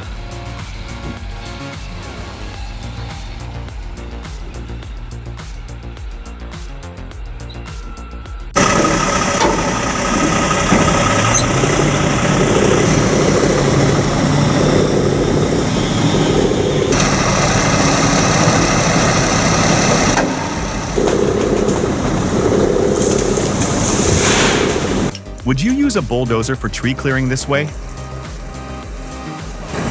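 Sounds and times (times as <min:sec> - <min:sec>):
bulldozer diesel engine running: 0:08.6 - 0:25.2.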